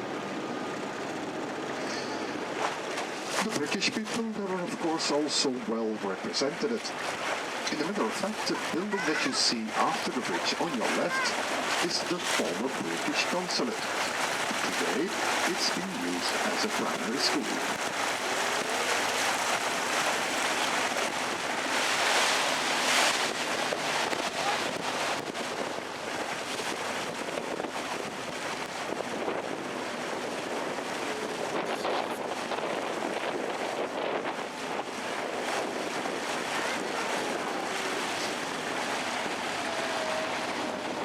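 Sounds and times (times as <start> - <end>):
water rushing along boat hull: 0.0 - 41.0
wind on microphone: 17.5 - 41.0.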